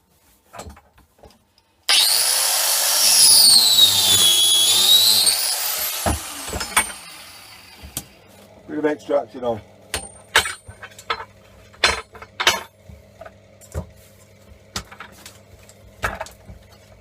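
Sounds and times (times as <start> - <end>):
angle grinder cutting cable: 1.9 - 8.2.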